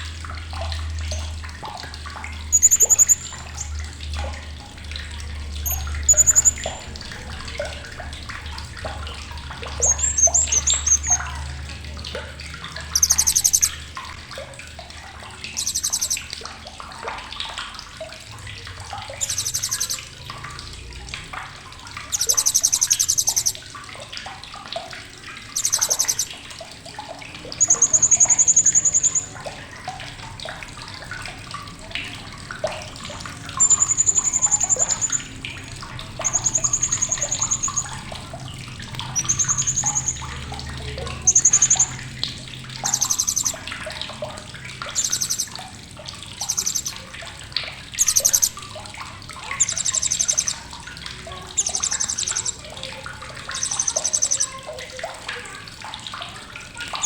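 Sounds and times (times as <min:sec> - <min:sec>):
running water: 0:00.0 - 0:57.0
parrot chattering calls: 0:02.5 - 0:03.7, 0:05.6 - 0:06.6, 0:13.0 - 0:13.8, 0:15.5 - 0:16.2, 0:19.2 - 0:20.1, 0:22.1 - 0:23.6, 0:25.5 - 0:26.3, 0:33.6 - 0:35.2, 0:36.2 - 0:37.9, 0:41.0 - 0:42.0, 0:42.8 - 0:43.6, 0:45.0 - 0:45.5, 0:46.5 - 0:47.0, 0:48.0 - 0:48.6, 0:51.3 - 0:52.6
parrot high whistles: 0:02.5 - 0:03.7, 0:13.0 - 0:13.8, 0:15.6 - 0:16.2, 0:19.2 - 0:20.0, 0:22.1 - 0:23.6, 0:25.5 - 0:26.3, 0:46.4 - 0:47.0, 0:48.0 - 0:48.6, 0:51.5 - 0:52.7, 0:53.6 - 0:54.6.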